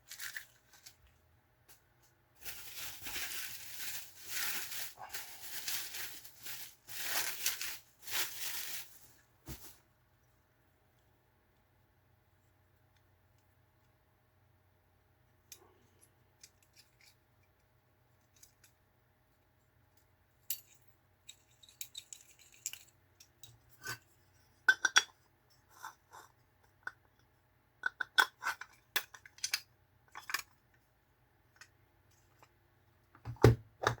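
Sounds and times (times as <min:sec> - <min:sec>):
metal toy cars clicking and clinking: 0:16.4 - 0:17.6, 0:20.4 - 0:24.0, 0:27.8 - 0:30.6.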